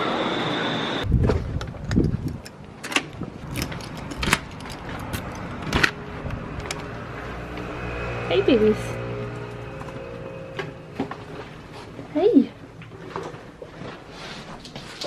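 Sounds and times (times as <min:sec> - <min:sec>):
vehicle ride noise: 0:01.0 - 0:15.0
keys jingling and clicking: 0:02.9 - 0:05.9
thin high tone: 0:06.0 - 0:12.4.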